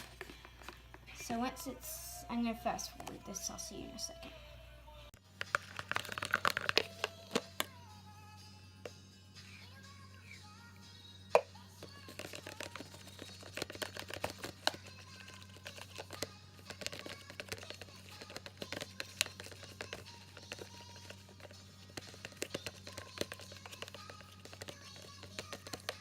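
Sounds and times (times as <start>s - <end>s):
plastic tool stirring in a bowl: 5.3s - 7.8s, 11.3s - 26.0s.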